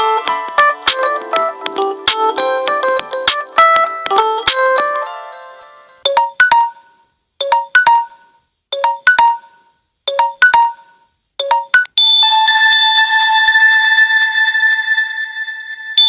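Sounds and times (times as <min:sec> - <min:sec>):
bright mallet-like ringtone notes: 0:05.1 - 0:16.0
sustained chime-like ringtone: 0:06.1 - 0:16.0.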